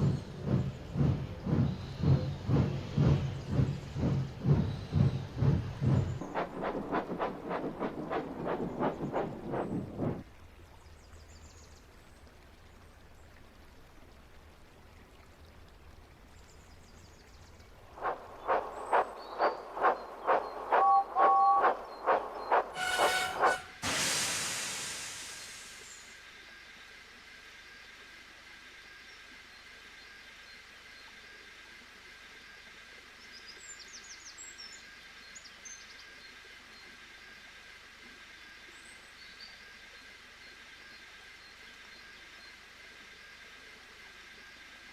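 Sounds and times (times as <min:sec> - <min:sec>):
birds chirping: 0:00.0 - 0:10.2, 0:17.0 - 0:23.8
low hum: 0:00.0 - 0:11.4, 0:12.2 - 0:26.2
low hiss: 0:00.0 - 0:33.9.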